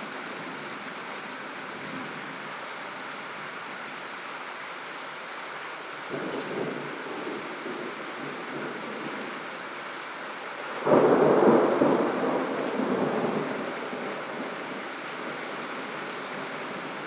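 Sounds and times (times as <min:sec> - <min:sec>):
steady rain: 0:00.0 - 0:17.0
thunder crack and rumble: 0:06.1 - 0:09.3, 0:10.7 - 0:14.8.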